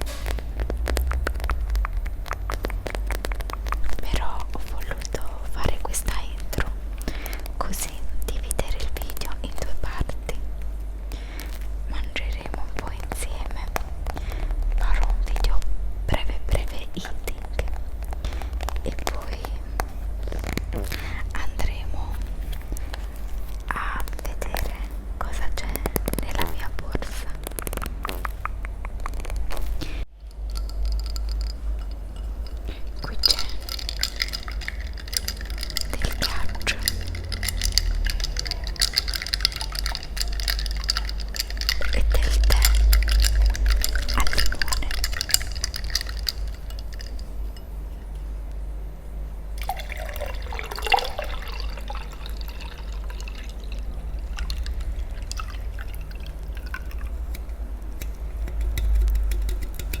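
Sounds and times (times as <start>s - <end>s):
eating and drinking sounds: 0.0s - 48.3s, 49.6s - 60.0s
low rumble: 0.0s - 49.6s
liquid against glass: 17.8s - 47.8s, 49.6s - 60.0s.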